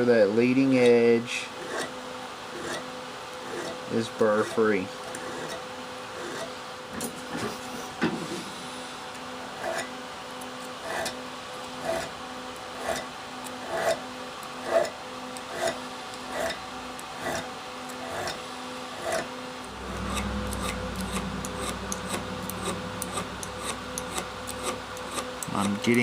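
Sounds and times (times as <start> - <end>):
file rasping across steel: 1.6 - 6.6, 9.6 - 9.9, 11.8 - 12.2, 12.8 - 14.0, 14.6 - 19.3
low steady hum: 18.4 - 26.0.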